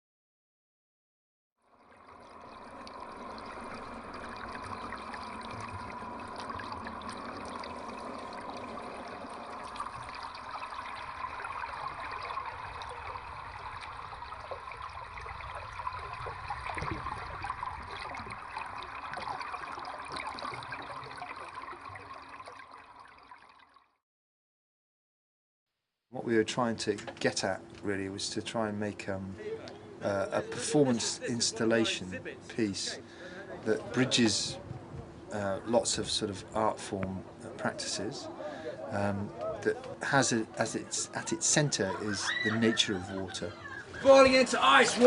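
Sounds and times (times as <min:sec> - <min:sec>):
water trickling and splashing: 0:01.6 - 0:24.0, 0:33.7 - 0:45.0.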